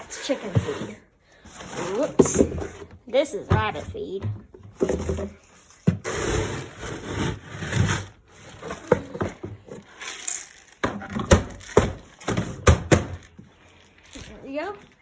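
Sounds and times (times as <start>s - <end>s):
rustling and scraping of feed: 4.8s - 15.0s
sharp knocks and clatters: 10.8s - 13.5s.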